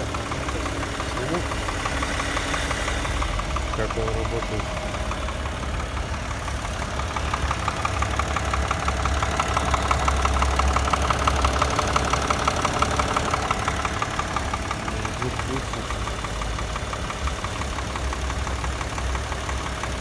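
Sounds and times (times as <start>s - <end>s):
engine idling with knock: 0.0s - 20.0s.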